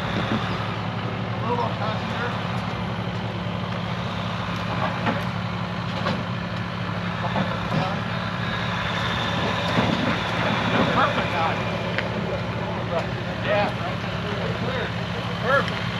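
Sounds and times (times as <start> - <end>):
vehicle engine running at low revs: 0.0 - 15.9.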